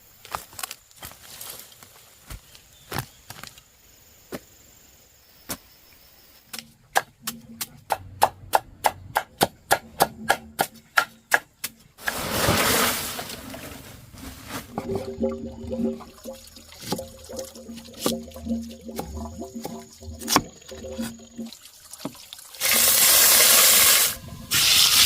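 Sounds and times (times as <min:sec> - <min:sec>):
blade chopping on wood: 0:06.5 - 0:11.8.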